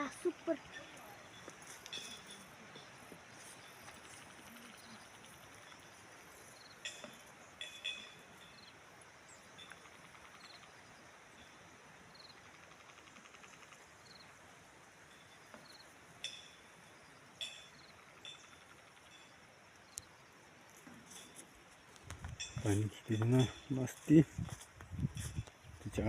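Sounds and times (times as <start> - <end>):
faint outdoor ambience: 0.0 - 26.0
sharp clinks: 0.7 - 3.0, 6.8 - 8.7, 22.2 - 24.3
rapid animal trill: 12.4 - 14.2.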